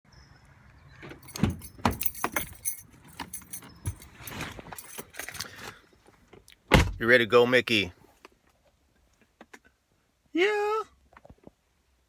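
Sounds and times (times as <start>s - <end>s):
jingling clicks and rattles: 1.0s - 5.5s.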